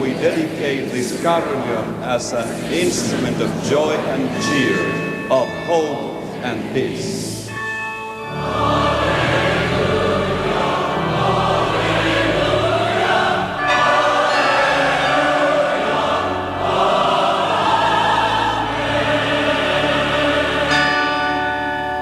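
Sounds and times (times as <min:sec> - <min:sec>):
choir singing sustained chords: 0:00.0 - 0:22.0
low accompaniment: 0:00.0 - 0:22.0.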